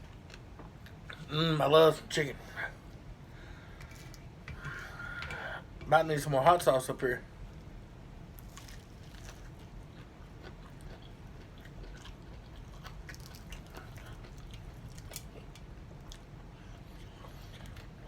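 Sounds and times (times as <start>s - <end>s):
faint steady low hum: 0.0s - 18.0s
person chewing chicken wings: 8.4s - 18.0s.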